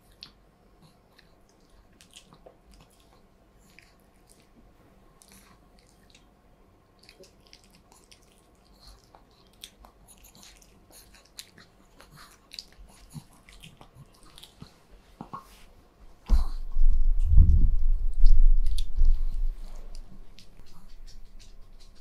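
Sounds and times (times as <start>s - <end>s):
dog mouth clicks and smacks: 18.1s - 19.3s, 19.9s - 22.0s.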